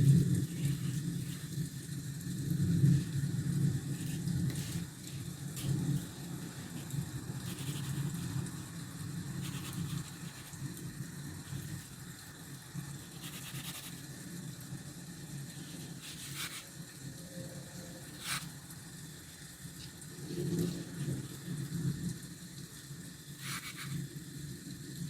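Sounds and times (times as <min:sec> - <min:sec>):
pencil scratching on paper: 0:00.5 - 0:01.5, 0:07.5 - 0:08.6, 0:09.4 - 0:10.6, 0:13.0 - 0:14.0, 0:15.8 - 0:16.6, 0:18.2 - 0:18.5, 0:23.4 - 0:24.0.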